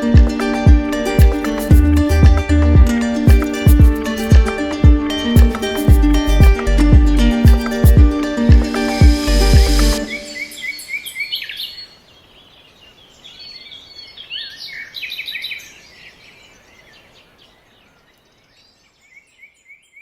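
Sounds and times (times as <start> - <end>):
birds chirping and whistling: 10.0 - 11.9.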